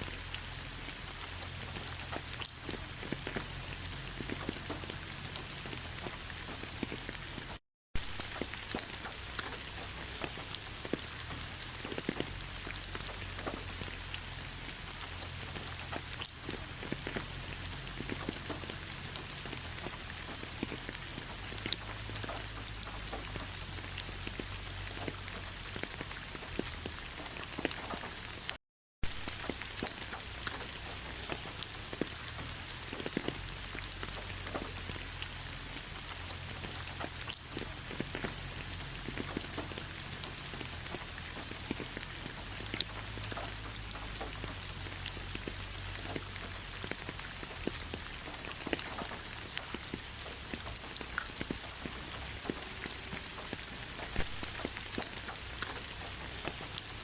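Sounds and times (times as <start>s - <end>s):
rain on fallen leaves: 0.0s - 57.0s.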